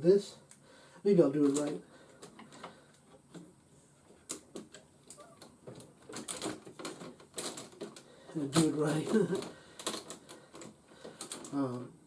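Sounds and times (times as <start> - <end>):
plastic toy parts clicking: 4.3 - 11.8.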